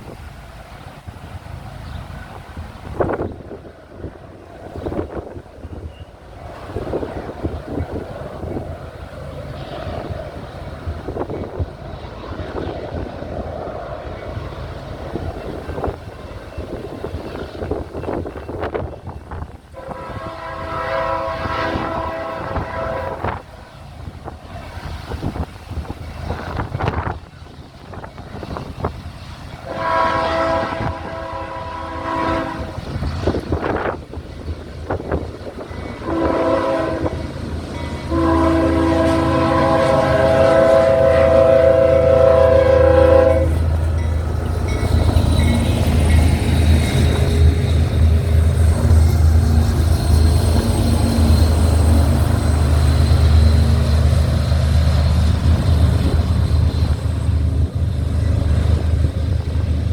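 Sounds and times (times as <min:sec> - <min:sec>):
freight train rumbling: 0:00.0 - 0:59.9
wind buffeting microphone: 0:00.0 - 0:59.9
locomotive air horn: 0:19.8 - 0:23.5, 0:29.6 - 0:32.8, 0:36.0 - 0:37.3, 0:38.0 - 0:43.7.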